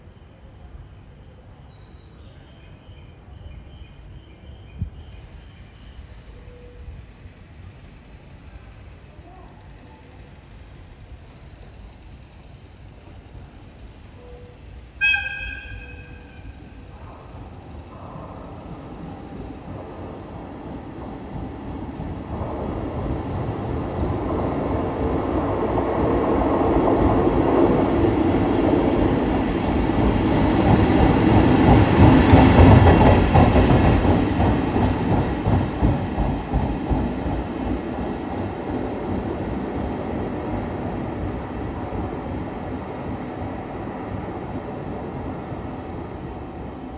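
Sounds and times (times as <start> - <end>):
electric locomotive passing: 0.0 - 46.9
wheels clattering on rails: 17.2 - 39.9.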